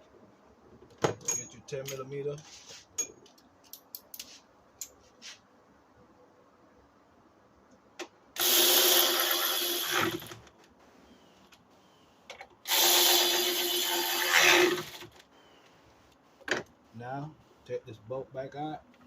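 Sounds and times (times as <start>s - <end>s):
cordless power driver running: 8.4s - 10.4s, 12.7s - 15.1s.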